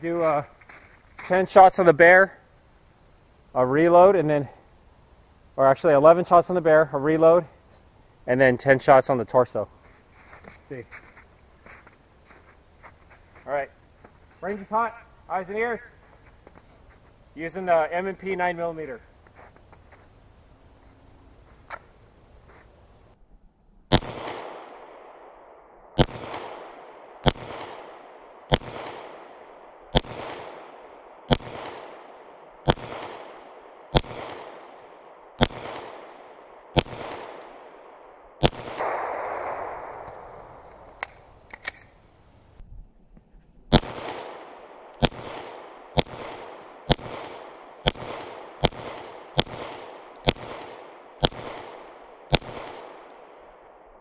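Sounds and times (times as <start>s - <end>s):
pistol shots with echo: 23.9s - 41.8s, 43.7s - 53.9s
small magazine clicks: 38.9s - 42.0s.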